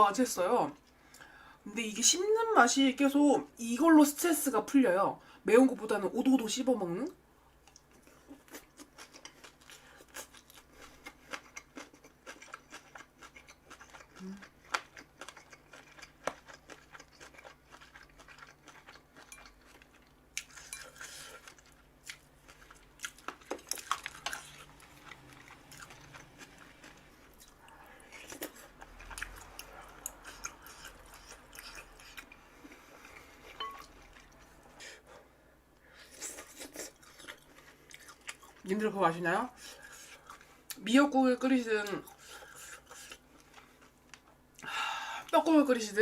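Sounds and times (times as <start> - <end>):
person chewing crunchy food: 7.6 - 34.8, 36.0 - 38.7, 39.6 - 40.8, 42.0 - 44.7
cutlery clinking on dishes: 33.6 - 33.9.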